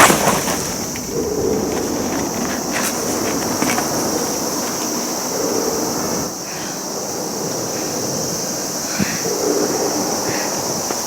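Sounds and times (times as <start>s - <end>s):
outdoor background noise: 0.0s - 11.0s.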